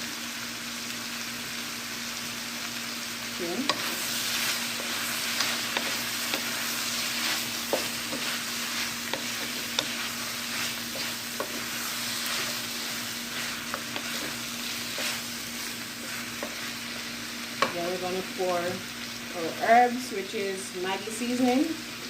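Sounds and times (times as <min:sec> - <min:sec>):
food sizzling in hot oil: 0:00.0 - 0:22.0
steady low hum: 0:03.2 - 0:20.5.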